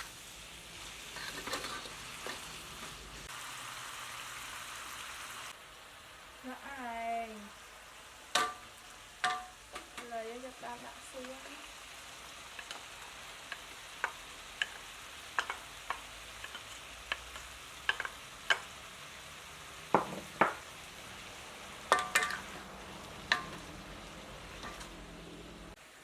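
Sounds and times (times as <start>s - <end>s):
food sizzling in a pan: 0.0s - 26.0s
utensil clinking against pan: 21.9s - 22.5s, 23.3s - 23.7s.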